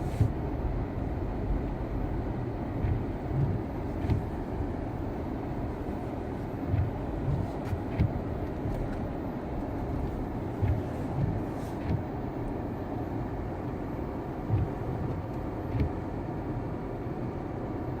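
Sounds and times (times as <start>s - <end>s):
road and tyre noise: 0.0s - 18.0s
low thumps: 14.4s - 15.9s.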